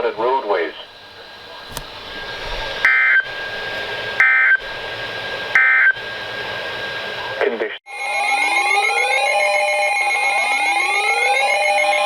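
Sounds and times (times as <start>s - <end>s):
radio hiss: 0.0s - 7.8s.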